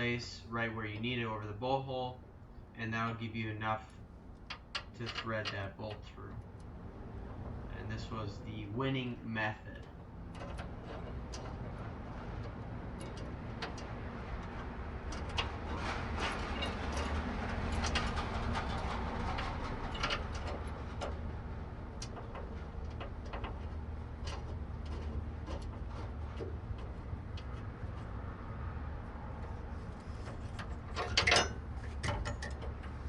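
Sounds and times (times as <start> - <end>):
steady low hum: 0.0 - 33.0
clinks of hand tools on metal: 4.5 - 6.2, 30.9 - 32.9.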